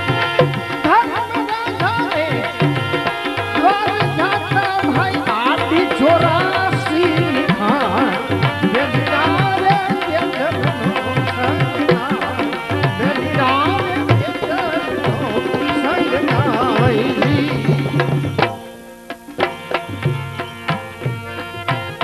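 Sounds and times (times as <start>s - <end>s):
tabla rhythm: 0.0s - 22.0s
gliding melody line: 13.2s - 19.1s.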